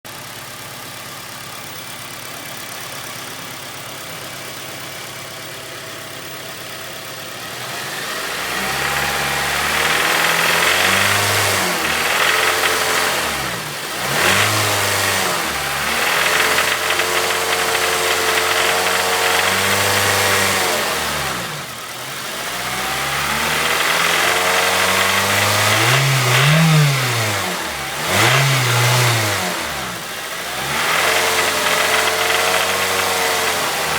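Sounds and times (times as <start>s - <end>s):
car engine idling and revving: 0.1s - 33.9s
engine knocking: 9.5s - 20.6s, 23.4s - 26.8s, 30.3s - 33.9s.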